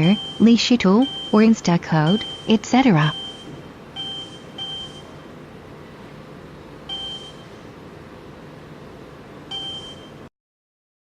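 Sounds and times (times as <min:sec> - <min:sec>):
short electronic beeps: 0:00.0 - 0:05.1, 0:06.9 - 0:07.5, 0:09.5 - 0:10.2
steady low hum: 0:00.0 - 0:10.3.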